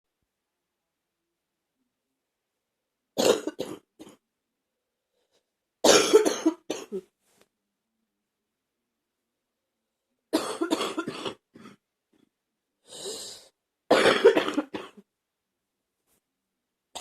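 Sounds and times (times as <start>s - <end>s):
person coughing: 3.2s - 4.2s, 5.8s - 7.1s, 10.4s - 11.8s, 13.9s - 15.0s.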